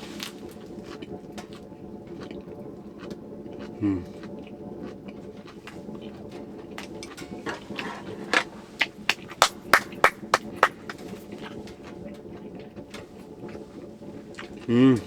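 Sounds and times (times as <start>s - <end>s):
crisp chewing crunches: 0.0s - 9.9s, 10.7s - 15.0s
low hum: 5.6s - 15.0s.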